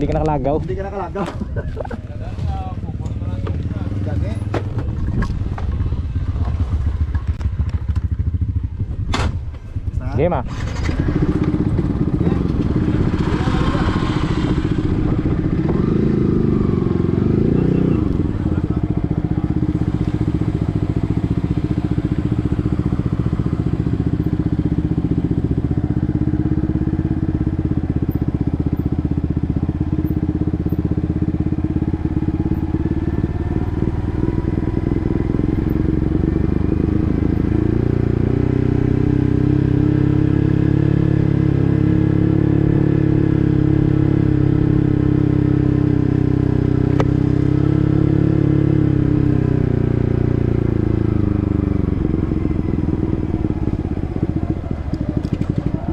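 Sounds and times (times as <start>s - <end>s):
motorcycle engine revving: 0.0s - 55.9s.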